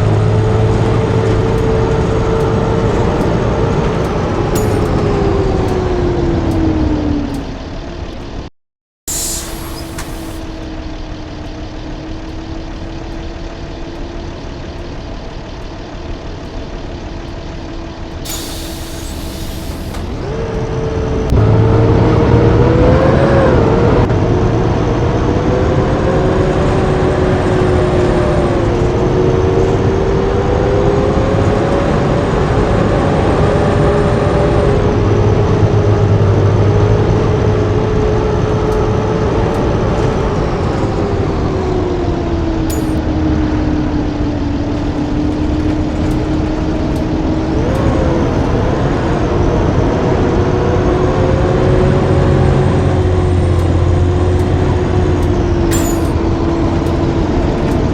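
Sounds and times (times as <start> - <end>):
bus engine: 0.0 - 8.5, 9.1 - 57.9
air brakes hissing: 9.1 - 10.8, 18.2 - 20.6, 42.7 - 43.0.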